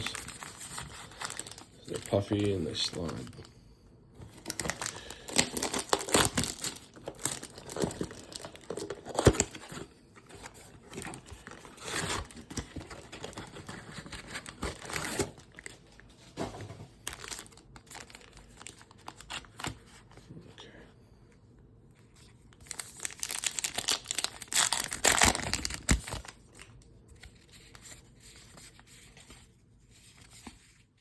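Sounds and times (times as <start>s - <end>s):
plastic wrappers crinkling and tearing: 0.0s - 3.5s, 4.3s - 16.1s, 17.0s - 19.8s, 22.5s - 27.8s.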